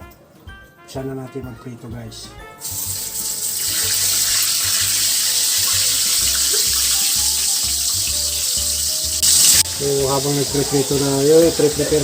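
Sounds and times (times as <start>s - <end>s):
fish sizzling in hot oil: 2.6s - 11.8s.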